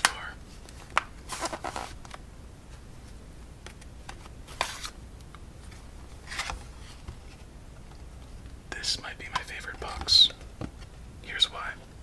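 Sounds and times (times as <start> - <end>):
card box rustle: 0.0 - 2.2, 3.8 - 5.0, 5.6 - 7.5, 8.8 - 11.8.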